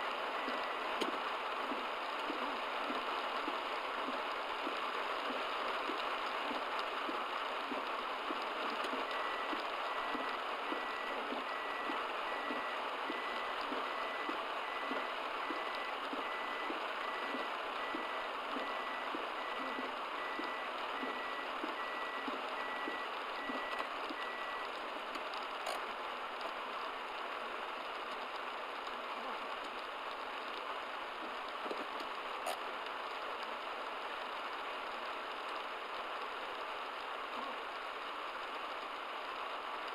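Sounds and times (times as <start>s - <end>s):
heavy rain on a car: 0.0s - 39.9s
electronic beeps: 9.0s - 24.7s.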